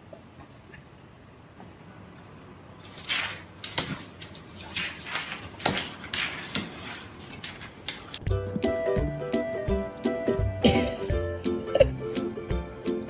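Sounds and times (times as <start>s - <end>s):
music: 8.2s - 13.0s.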